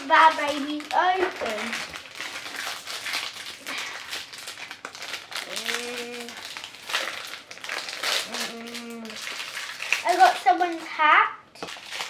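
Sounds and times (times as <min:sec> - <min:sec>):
plastic wrappers crinkling: 0:00.0 - 0:12.0
person humming: 0:05.4 - 0:06.4, 0:08.2 - 0:09.2.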